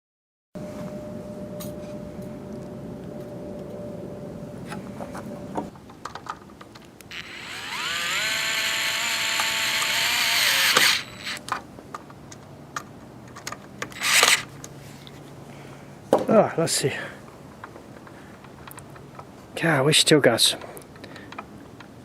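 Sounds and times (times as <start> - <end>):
miter saw motor whining: 7.1 - 11.4, 14.0 - 14.4.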